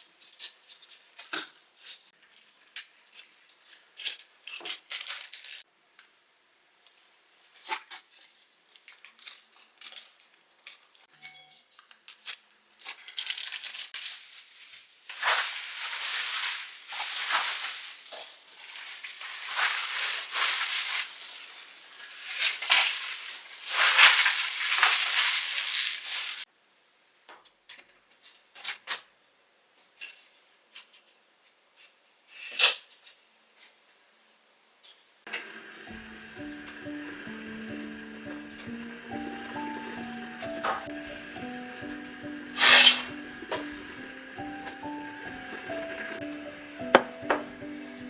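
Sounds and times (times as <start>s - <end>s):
objects scraping and rustling: 12.9s - 26.4s, 35.3s - 46.2s.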